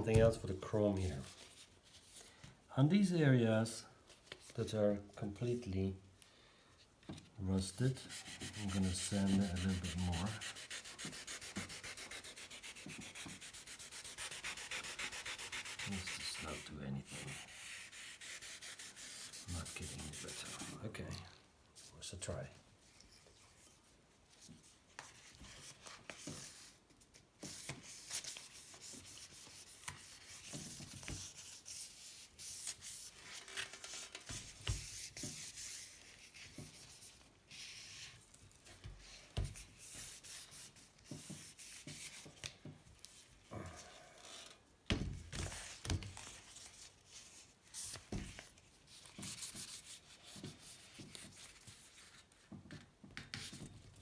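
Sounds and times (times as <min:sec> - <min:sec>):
sandpaper scratching on metal: 0:07.8 - 0:20.8.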